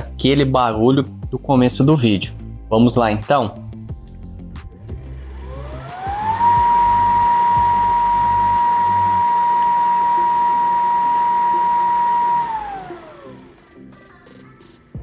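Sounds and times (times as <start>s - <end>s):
gate motor whine: 5.0s - 14.0s.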